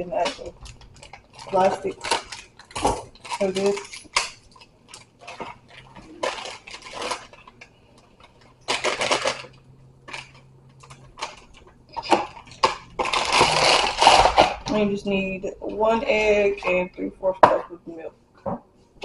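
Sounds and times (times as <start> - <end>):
plastic packaging crinkling: 0.0 - 14.8.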